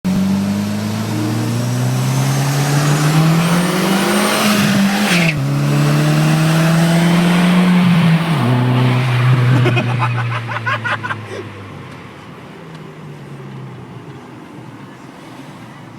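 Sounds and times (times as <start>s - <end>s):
car engine accelerating: 0.1s - 10.8s.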